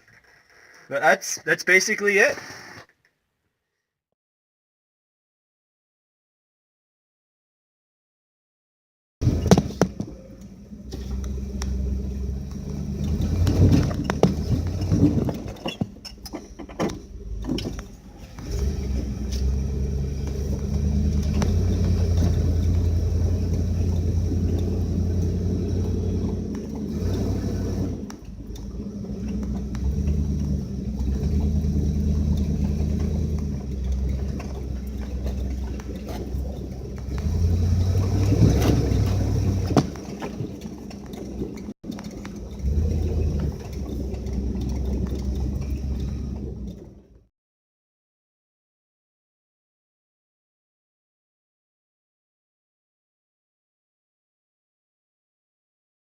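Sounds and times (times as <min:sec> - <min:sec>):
engine exhaust rumble: 0:09.2 - 0:47.3.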